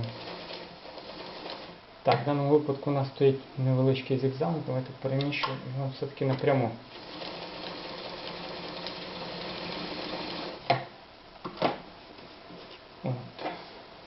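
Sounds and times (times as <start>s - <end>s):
sewing machine running: 0.0s - 1.8s, 6.9s - 10.6s.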